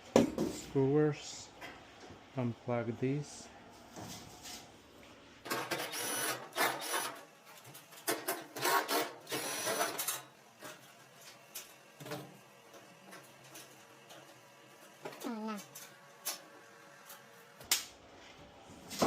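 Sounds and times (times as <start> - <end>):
cordless drill bursts: 5.7 - 7.2, 8.6 - 10.0.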